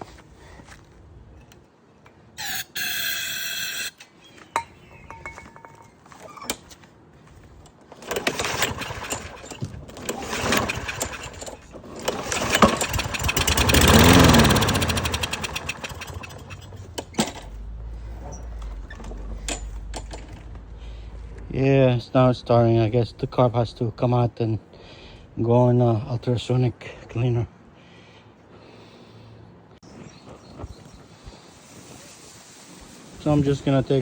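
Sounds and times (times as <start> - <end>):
lawn mower engine starting and revving: 7.9 - 23.7.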